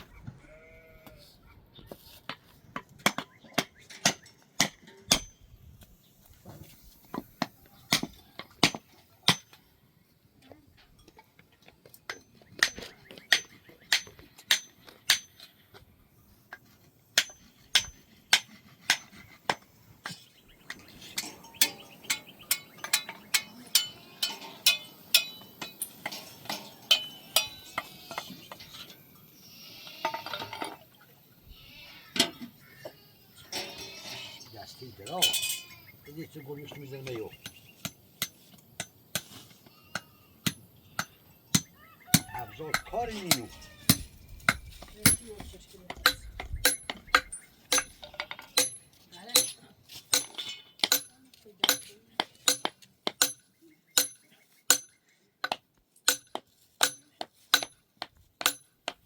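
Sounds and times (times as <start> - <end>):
tool striking with metallic ring: 12.1 - 15.5, 17.2 - 28.7, 46.0 - 57.8, 58.4 - 59.0.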